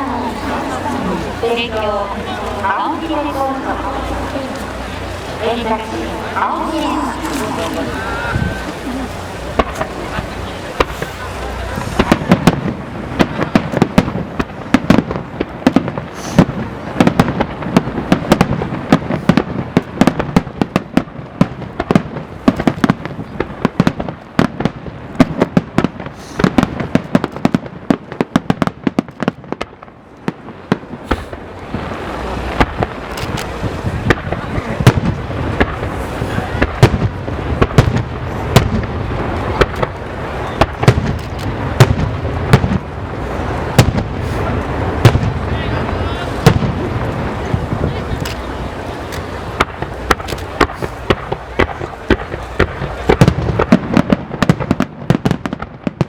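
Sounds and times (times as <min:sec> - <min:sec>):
fireworks bangs and crackles: 0:00.0 - 0:56.0.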